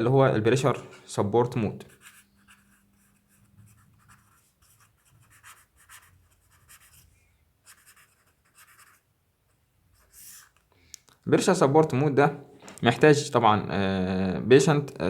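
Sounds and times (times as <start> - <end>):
pen scratching on paper: 1.8 - 10.6.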